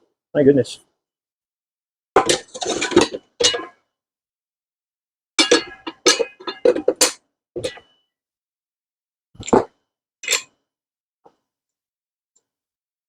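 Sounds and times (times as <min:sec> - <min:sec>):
metal tools clinking and rattling: 0:02.2 - 0:03.7, 0:05.4 - 0:07.8.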